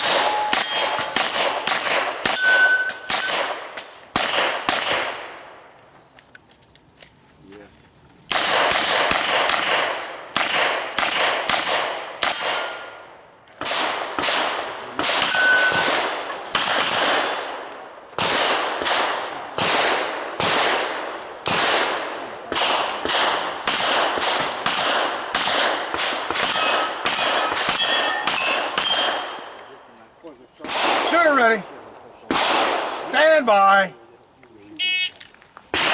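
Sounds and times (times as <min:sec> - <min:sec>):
bullets ringing steel plates: 0:00.0 - 0:01.3, 0:02.2 - 0:03.5, 0:12.2 - 0:13.1, 0:15.2 - 0:15.9, 0:26.4 - 0:29.5.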